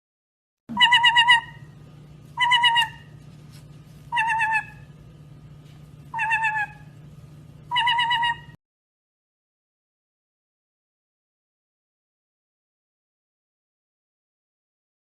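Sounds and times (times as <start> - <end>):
bird calling: 0.7 - 3.2, 4.1 - 4.9, 6.1 - 7.0, 7.7 - 8.6
steady low hum: 0.7 - 8.6.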